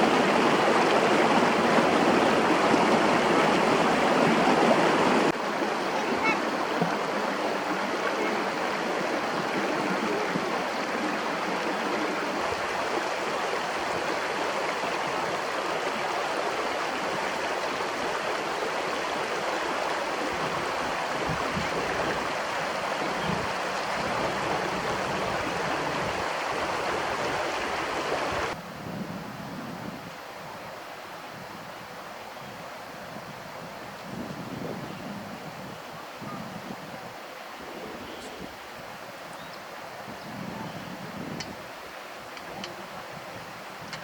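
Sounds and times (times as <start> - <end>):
stream water rushing: 0.0 - 44.0.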